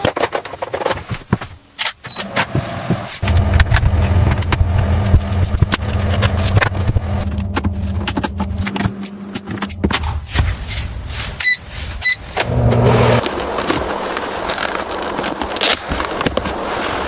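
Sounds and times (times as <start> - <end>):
motor humming: 3.2 - 9.9, 12.4 - 14.0.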